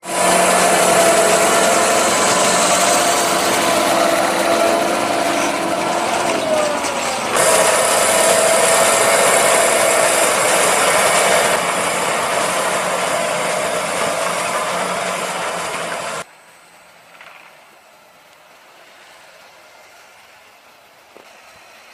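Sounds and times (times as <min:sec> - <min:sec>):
tractor engine under load: 0:00.0 - 0:16.3.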